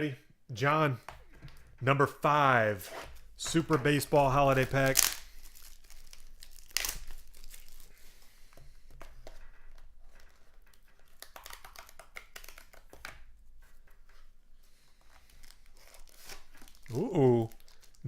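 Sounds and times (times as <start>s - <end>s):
wrapper crinkling: 3.2s - 8.3s, 10.1s - 13.0s, 15.0s - 18.0s
wrapper ripping: 4.0s - 8.2s, 10.8s - 13.0s, 15.2s - 18.0s.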